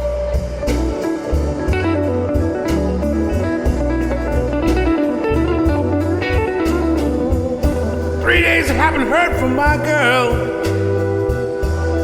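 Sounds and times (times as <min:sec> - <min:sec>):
bass line: 0:00.0 - 0:12.0
blues guitar: 0:00.0 - 0:12.0
drum beat: 0:07.6 - 0:10.8
person singing: 0:08.2 - 0:11.3.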